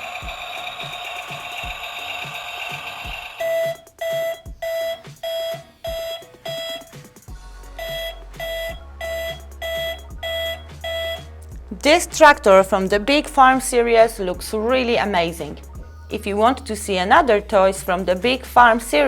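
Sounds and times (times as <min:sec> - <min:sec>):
toy tractor engine warble: 0:00.0 - 0:03.6
reversing beeper: 0:02.2 - 0:07.0, 0:07.7 - 0:11.3.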